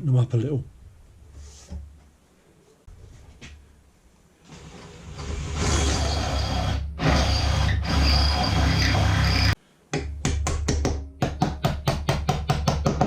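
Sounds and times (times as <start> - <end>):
electric drill boring through wood: 4.5 - 9.6.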